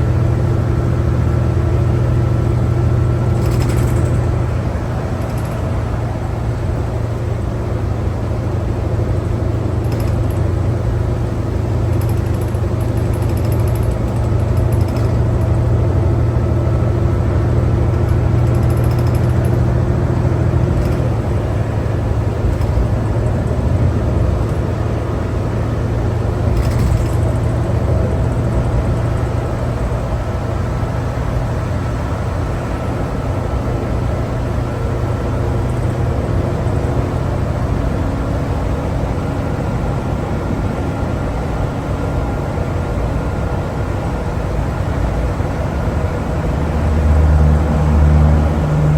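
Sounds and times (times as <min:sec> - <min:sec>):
bus engine drone: 0:00.0 - 0:48.9
sharp rattle: 0:01.9 - 0:06.9, 0:09.6 - 0:16.7, 0:17.5 - 0:31.6.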